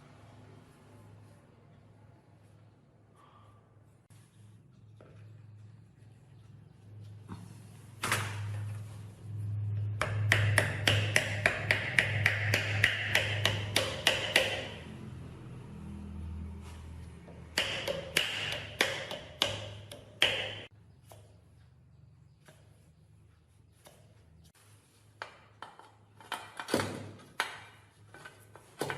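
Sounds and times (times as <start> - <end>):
hammer tapping on metal: 9.9 - 14.8, 17.5 - 20.7.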